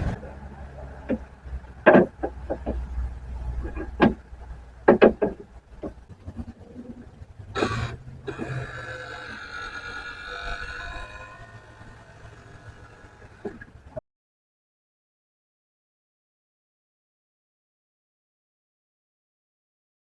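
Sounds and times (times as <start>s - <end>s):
faint steady hum: 0.0s - 14.0s
parts knocking and clunking: 0.0s - 14.0s
short rasping burst: 6.2s - 14.0s.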